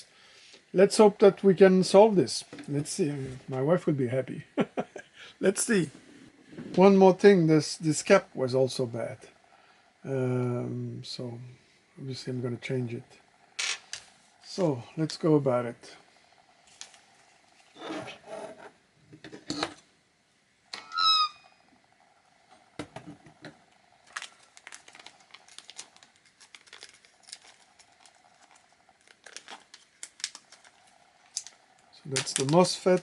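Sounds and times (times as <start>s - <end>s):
faint steady hum: 0.0s - 33.0s
short squeak: 20.8s - 21.6s.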